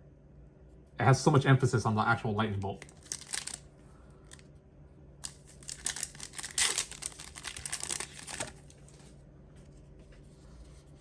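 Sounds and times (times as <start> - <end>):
foil wrapper crinkling: 2.8 - 3.6, 5.2 - 9.2.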